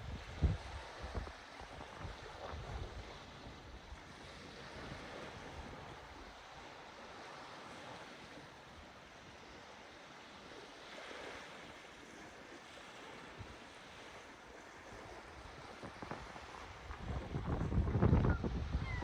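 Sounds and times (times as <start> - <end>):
faint sea waves washing in: 0.0 - 19.0.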